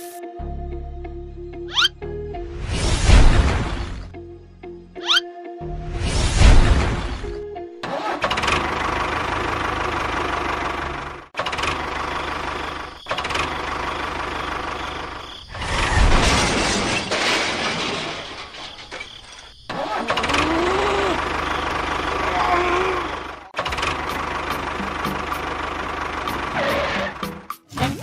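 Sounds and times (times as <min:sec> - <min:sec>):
vehicle engine running: 0:07.8 - 0:15.3, 0:20.2 - 0:27.6.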